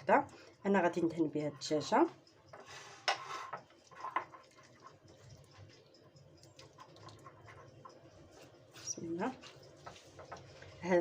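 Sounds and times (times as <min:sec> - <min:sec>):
soft rubbing: 0:07.2 - 0:10.8.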